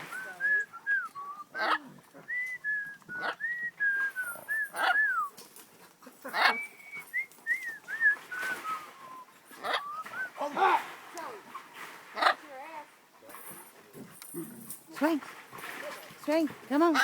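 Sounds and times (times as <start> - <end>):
bird whistling: 0.0 - 5.4, 6.4 - 10.4.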